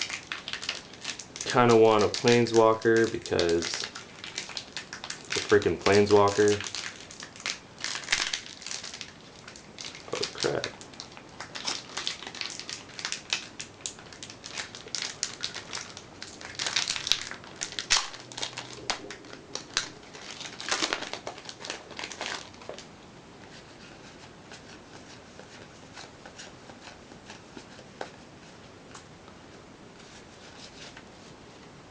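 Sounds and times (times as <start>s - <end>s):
foil wrapper crinkling: 0.0s - 22.9s
faint room hiss: 0.0s - 31.9s
trading cards handled: 5.4s - 6.6s.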